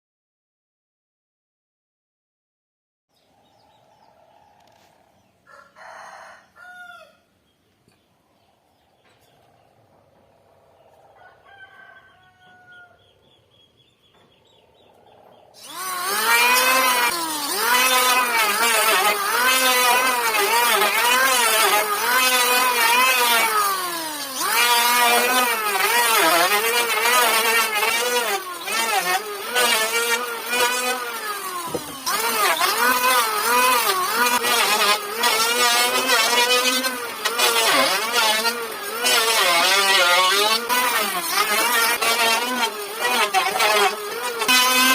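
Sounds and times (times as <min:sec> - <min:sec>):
power tool cutting wood: 0:14.9 - 0:44.9.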